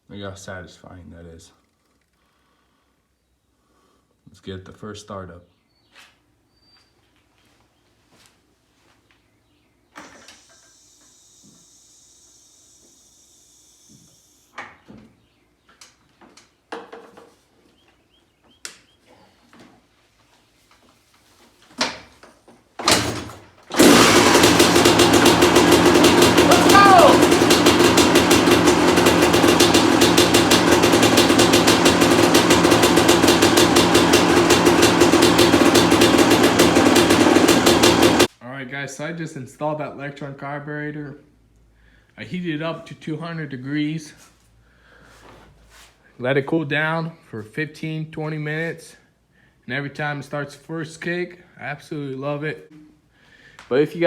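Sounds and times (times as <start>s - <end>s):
motorcycle engine running steadily: 23.7s - 38.3s.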